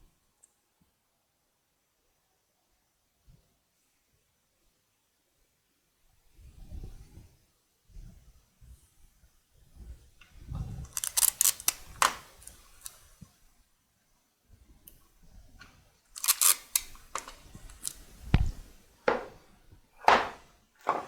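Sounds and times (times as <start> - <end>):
tape ripping off roll: 10.9 - 12.6, 16.2 - 18.0
hard wooden knock: 19.1 - 19.4, 20.0 - 21.0.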